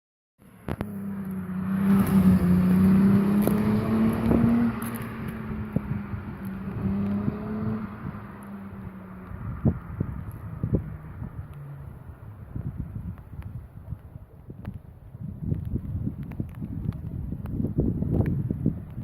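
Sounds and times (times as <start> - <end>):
car engine accelerating: 0.5 - 12.4.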